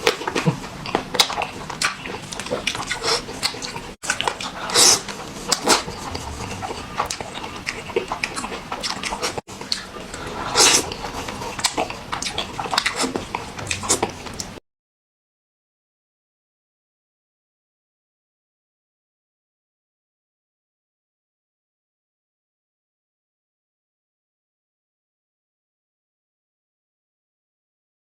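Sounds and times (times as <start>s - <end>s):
wet smacks and chewing clicks: 0.0s - 14.6s
noodles slurped: 1.2s - 14.6s.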